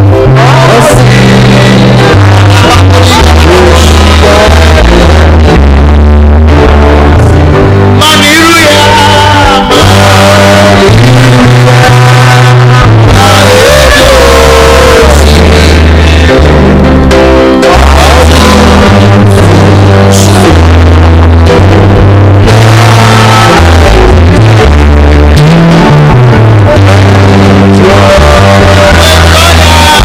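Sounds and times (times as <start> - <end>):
live band with bass and guitar: 0.0 - 30.0
singing: 0.2 - 5.6, 8.0 - 16.4, 17.5 - 20.7, 22.4 - 24.7, 26.7 - 30.0.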